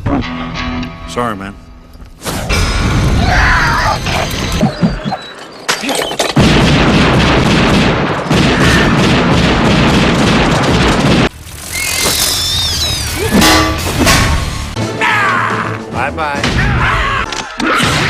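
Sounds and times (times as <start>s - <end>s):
sharp booming impacts: 13.0s - 14.8s.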